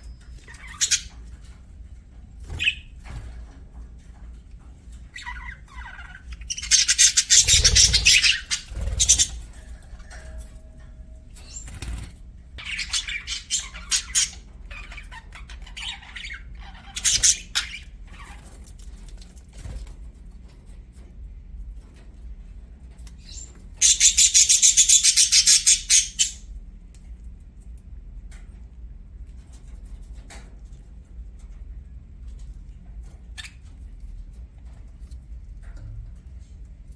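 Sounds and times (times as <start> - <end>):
budgerigars chirping: 0.4 - 1.2, 2.5 - 2.9, 5.2 - 9.5, 12.6 - 18.4, 23.2 - 26.4.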